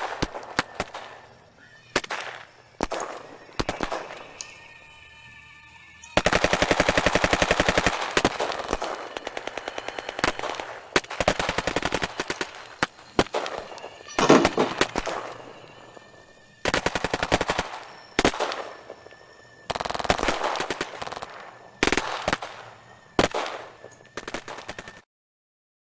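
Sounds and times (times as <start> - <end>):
machine-gun fire: 0.0 - 1.2, 1.9 - 4.4, 6.2 - 16.0, 16.6 - 19.0, 19.7 - 25.0
loud blast: 6.2 - 24.7.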